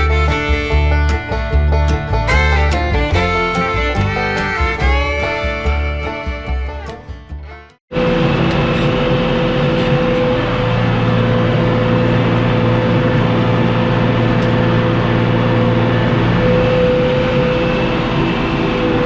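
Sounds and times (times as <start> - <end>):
music: 0.0 - 7.8
tractor engine drone: 0.0 - 19.0.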